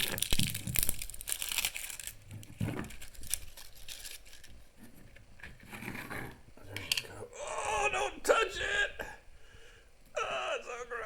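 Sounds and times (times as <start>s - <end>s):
packaging crinkling and tearing: 0.0s - 4.7s.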